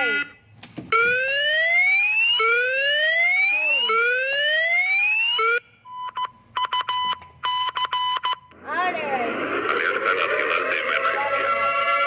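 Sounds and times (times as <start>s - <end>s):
electronic siren rising sweeps: 1.0s - 5.7s.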